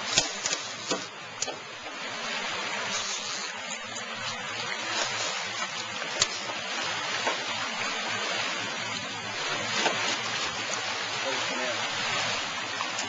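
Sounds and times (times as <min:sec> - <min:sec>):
rushing water: 0:00.0 - 0:13.0.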